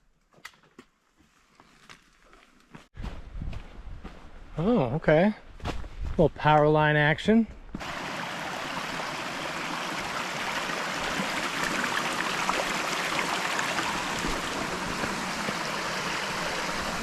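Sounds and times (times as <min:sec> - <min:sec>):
small waterfall rushing: 0:07.8 - 0:17.0.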